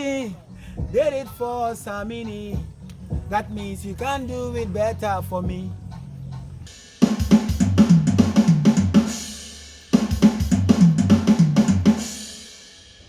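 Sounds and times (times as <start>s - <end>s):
drum and cymbal fills: 6.7s - 13.0s.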